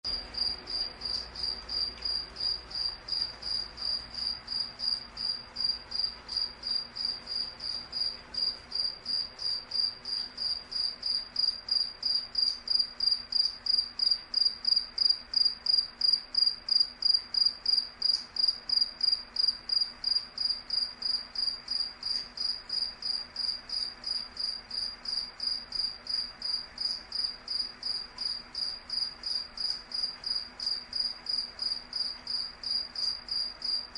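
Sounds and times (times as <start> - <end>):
cricket chirping: 0.1 - 33.9.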